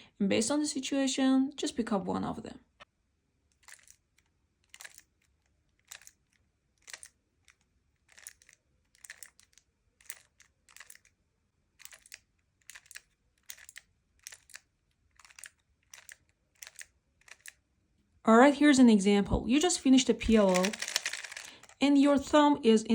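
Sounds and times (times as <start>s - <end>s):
plastic clacks of speed cube turning: 3.6s - 11.1s, 11.8s - 17.6s, 20.2s - 21.8s.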